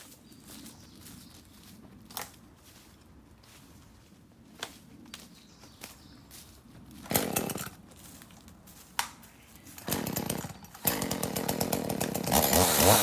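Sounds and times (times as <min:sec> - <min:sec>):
chainsaw starting and running: 0:07.0 - 0:07.8, 0:09.7 - 0:13.0.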